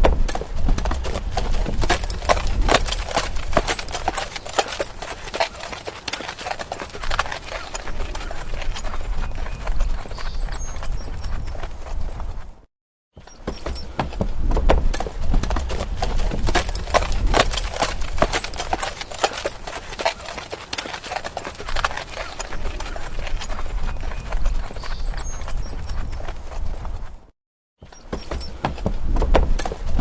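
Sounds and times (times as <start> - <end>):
horse hooves clip-clopping: 0.0 - 12.6, 13.2 - 27.3, 27.9 - 30.0.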